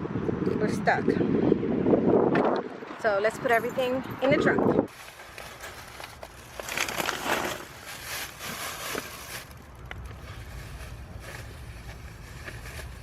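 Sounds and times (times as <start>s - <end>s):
grocery bags rustling: 4.9s - 13.0s.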